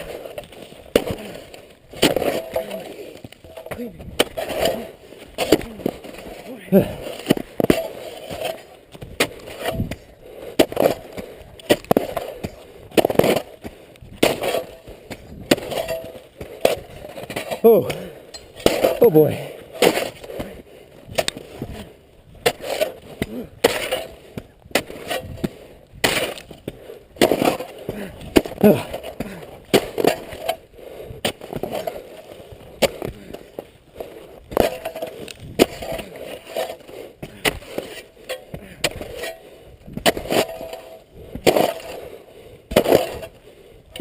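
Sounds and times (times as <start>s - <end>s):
shovel striking hard snow: 0.0s - 43.4s.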